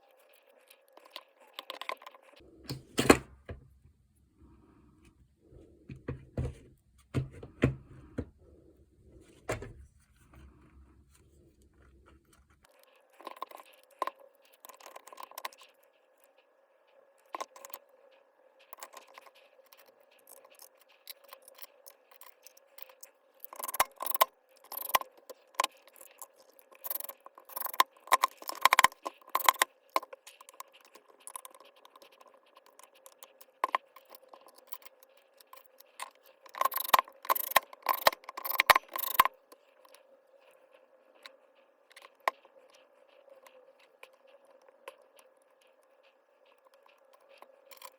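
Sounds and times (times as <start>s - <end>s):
faint steady hum: 0.0s - 47.9s
small hard objects clicking: 18.8s - 39.4s.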